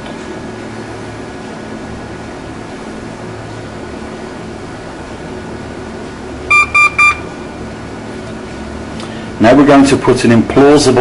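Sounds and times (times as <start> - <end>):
steady low hum: 0.0 - 11.0
short electronic beeps: 6.5 - 7.4.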